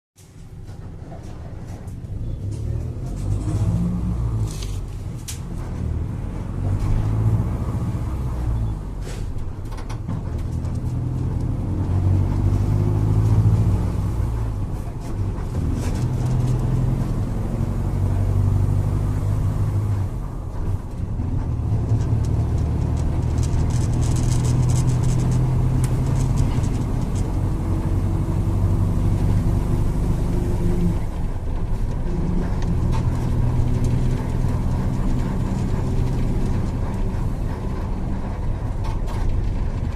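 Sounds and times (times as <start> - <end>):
bus diesel engine running: 0.2 - 39.9.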